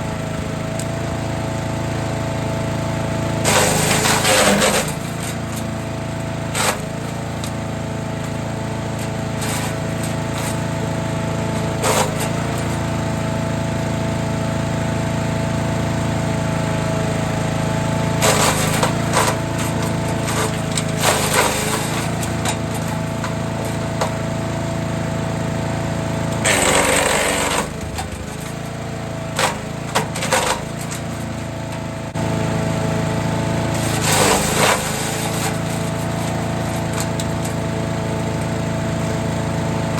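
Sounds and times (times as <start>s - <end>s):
wood chipper engine running: 0.0s - 39.9s
branches cracking in cutters: 3.4s - 7.6s, 9.0s - 10.7s, 11.5s - 12.9s, 18.1s - 24.5s, 26.3s - 31.9s, 33.6s - 39.1s.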